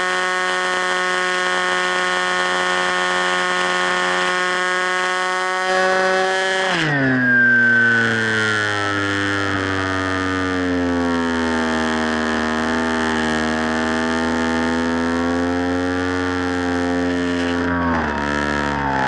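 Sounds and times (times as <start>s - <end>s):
rc plane motor whine: 0.0s - 19.0s.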